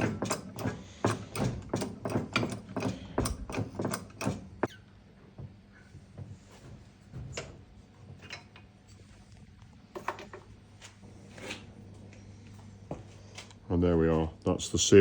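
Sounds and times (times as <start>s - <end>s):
metal parts clicking and knocking: 0.0s - 4.7s.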